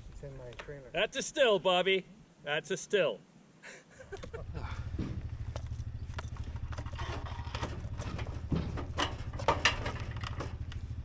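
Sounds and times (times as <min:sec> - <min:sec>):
engine idling: 0:04.1 - 0:11.0
sharp knocks and clunks: 0:04.2 - 0:10.9.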